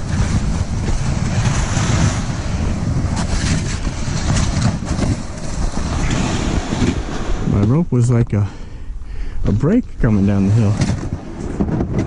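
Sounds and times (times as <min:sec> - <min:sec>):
wind buffeting microphone: 0:00.0 - 0:12.0
short scraping crunches: 0:09.3 - 0:12.0.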